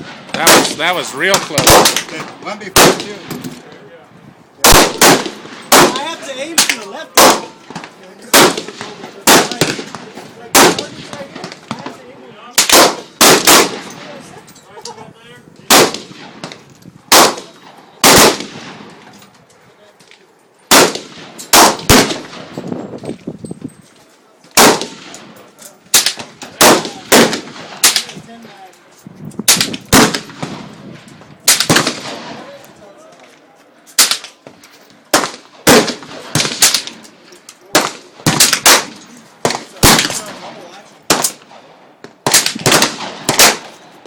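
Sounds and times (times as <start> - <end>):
rifle shots: 0.0 - 3.4, 4.6 - 12.0, 12.6 - 14.2, 15.7 - 19.0, 20.7 - 22.6, 24.6 - 28.2, 29.4 - 30.8, 31.4 - 32.5, 34.0 - 34.4, 35.1 - 37.0, 37.7 - 43.8.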